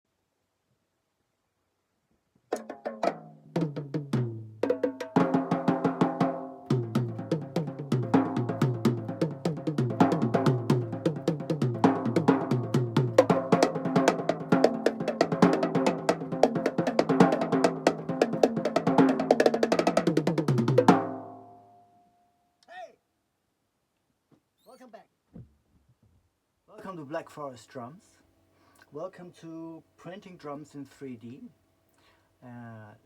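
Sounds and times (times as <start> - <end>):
drum kit playing: 2.5 - 21.6.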